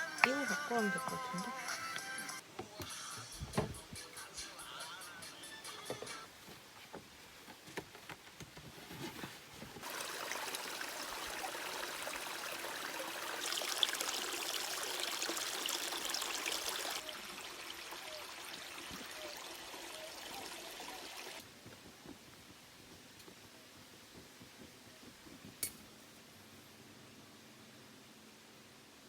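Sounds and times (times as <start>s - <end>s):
water running and splashing: 9.8s - 21.4s.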